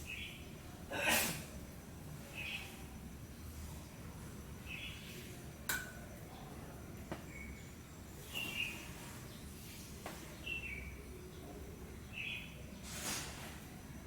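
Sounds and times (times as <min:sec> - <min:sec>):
birds chirping: 0:07.2 - 0:09.6.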